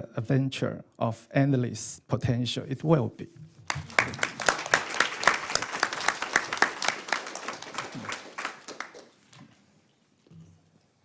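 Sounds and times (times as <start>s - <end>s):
audience applauding: 3.7s - 9.4s.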